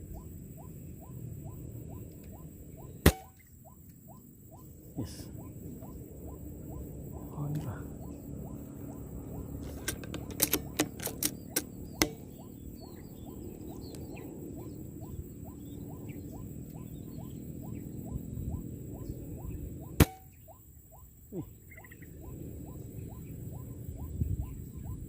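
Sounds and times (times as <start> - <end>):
loud sharp crack: 3.0 - 3.4, 20.0 - 20.4
sharp clicks: 9.6 - 12.3.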